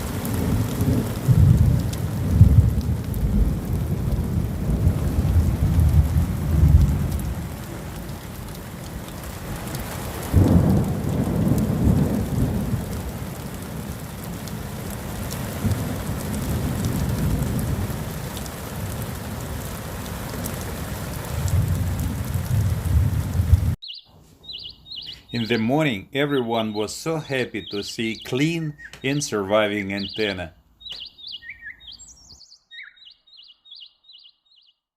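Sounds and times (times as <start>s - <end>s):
loud thunder clap: 0.0s - 7.8s, 10.2s - 19.3s
rolling thunder: 0.0s - 9.2s, 10.2s - 23.8s
heavy rain: 0.0s - 23.8s, 24.9s - 30.5s.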